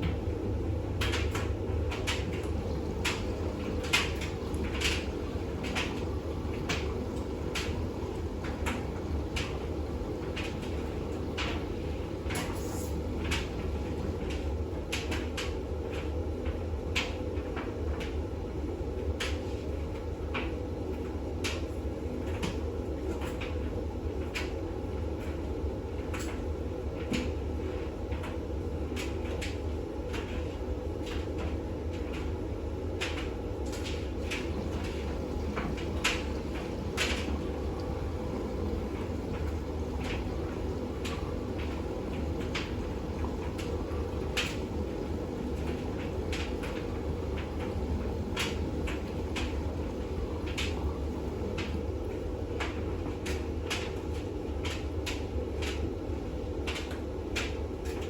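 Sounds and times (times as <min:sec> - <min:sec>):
washing machine drum turning: 0:00.0 - 0:18.1, 0:32.2 - 0:56.0.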